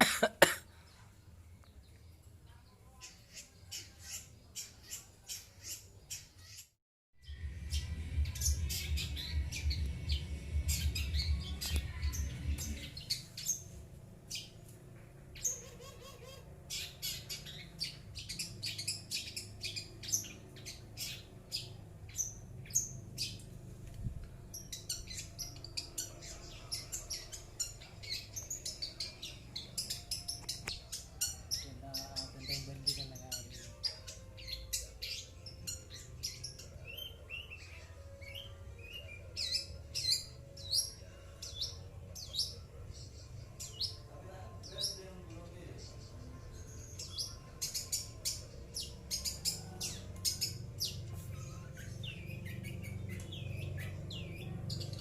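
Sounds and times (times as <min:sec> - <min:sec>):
low rumble: 0:07.2 - 0:13.3.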